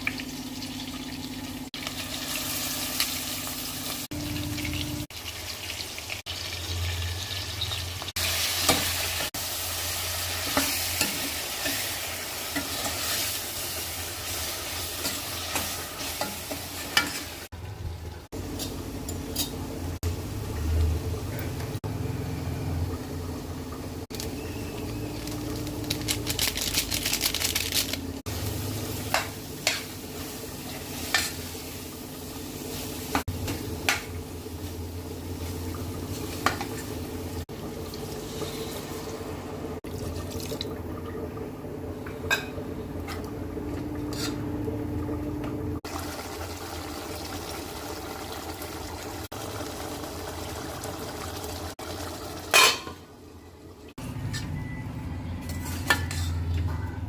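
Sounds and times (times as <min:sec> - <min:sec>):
utensil clinking against pots: 0:52.5 - 0:53.0, 0:55.4 - 0:56.9.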